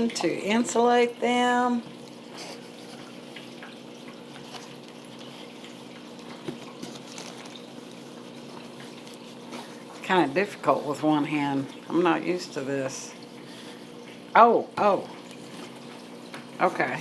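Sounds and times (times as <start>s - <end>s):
low background hum: 0.0s - 17.0s
handling of box packing: 6.3s - 7.7s.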